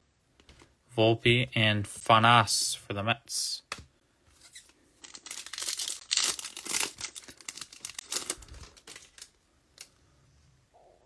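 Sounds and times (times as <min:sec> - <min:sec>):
foil wrapper tearing and crinkling: 0:05.0 - 0:09.9.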